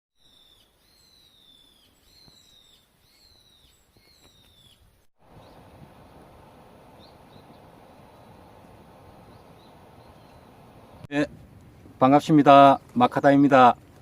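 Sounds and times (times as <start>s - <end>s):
faint chirp: 0.2s - 11.1s
whistled bird calls: 0.2s - 11.1s
steady low hiss: 4.9s - 13.8s.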